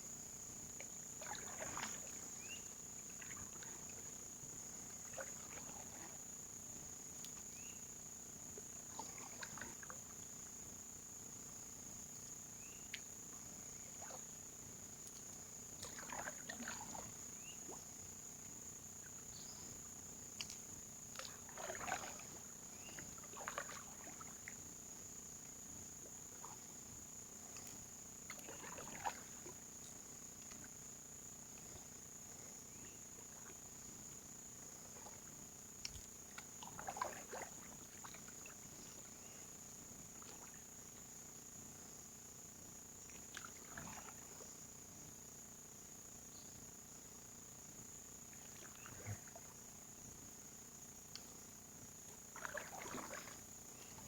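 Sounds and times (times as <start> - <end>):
swamp insects droning: 0.0 - 54.0
paddle splashing in water: 1.2 - 3.9, 15.8 - 17.2, 21.1 - 24.6, 28.3 - 29.8, 34.8 - 39.1, 43.1 - 44.4, 52.1 - 54.0.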